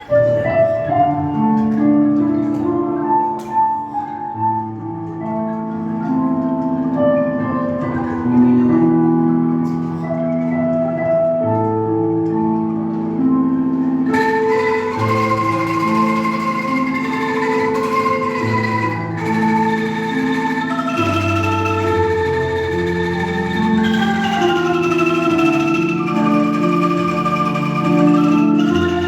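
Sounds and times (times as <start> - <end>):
angklung ensemble playing melody: 12.0 - 29.0.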